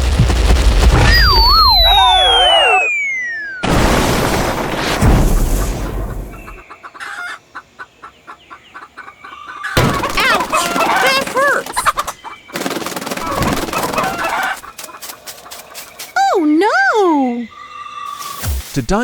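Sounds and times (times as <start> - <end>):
chickens clucking: 5.9 - 16.2.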